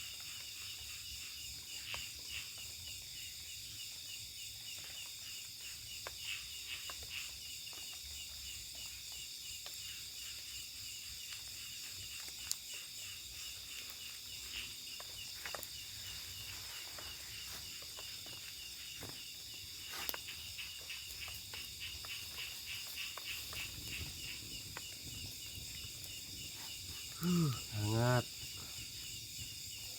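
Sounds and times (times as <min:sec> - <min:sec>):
crickets chirring: 0:00.0 - 0:29.9
fast pulsing insect trill: 0:00.0 - 0:29.9.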